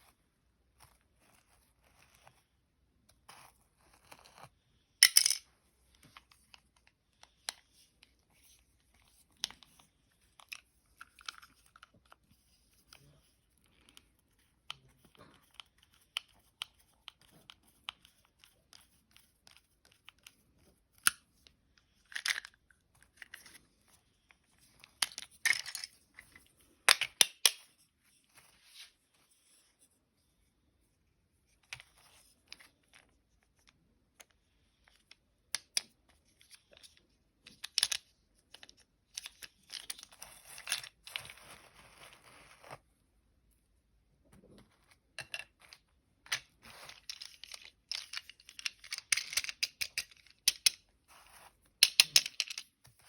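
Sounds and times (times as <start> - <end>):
plastic parts rustling: 5.0 - 5.4, 24.5 - 27.6, 36.4 - 42.7, 45.2 - 53.0
plastic toy parts clicking: 47.0 - 50.8.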